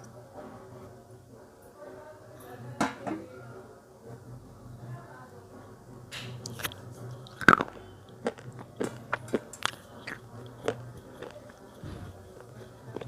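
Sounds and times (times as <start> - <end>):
crisp chewing crunches: 6.5 - 13.0.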